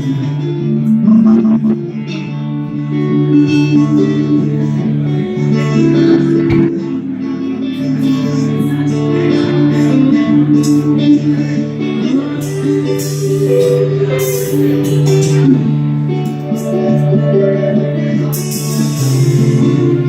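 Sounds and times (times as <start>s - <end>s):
guitar: 0.0s - 20.0s
low bass line: 0.9s - 2.0s, 5.2s - 7.6s.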